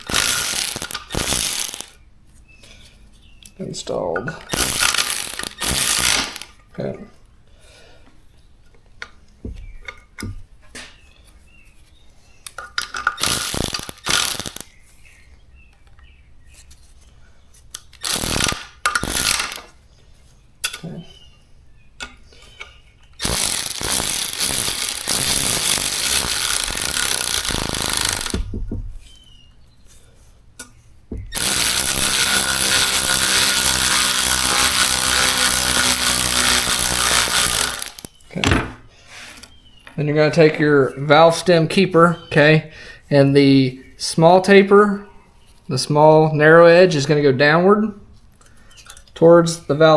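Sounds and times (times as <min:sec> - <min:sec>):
metal parts clicking and knocking: 0:00.0 - 0:02.0, 0:04.2 - 0:06.7, 0:12.5 - 0:14.7, 0:17.8 - 0:19.7, 0:22.0 - 0:28.9, 0:31.2 - 0:38.7
power tool whining: 0:00.0 - 0:02.0, 0:04.4 - 0:06.6, 0:12.8 - 0:14.7, 0:17.9 - 0:19.8, 0:22.6 - 0:28.8, 0:31.2 - 0:38.6.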